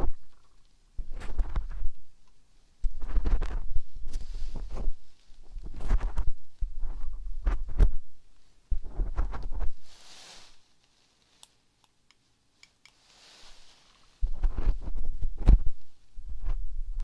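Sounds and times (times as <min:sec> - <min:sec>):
crackling rubs: 0:00.0 - 0:02.1, 0:02.8 - 0:08.2, 0:08.8 - 0:12.0, 0:12.6 - 0:17.0
soft hiss: 0:00.0 - 0:17.0
muffled low thumps: 0:14.2 - 0:17.0.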